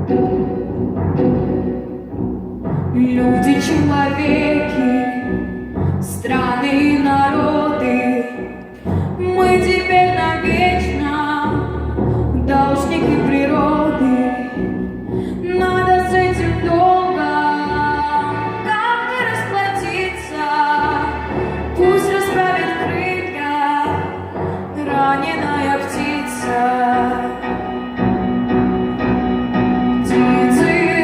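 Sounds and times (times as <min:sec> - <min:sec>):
instrumental accompaniment: 0:00.0 - 0:31.0
woman singing operatically: 0:02.9 - 0:14.7, 0:15.4 - 0:21.2, 0:21.8 - 0:27.5, 0:30.0 - 0:31.0.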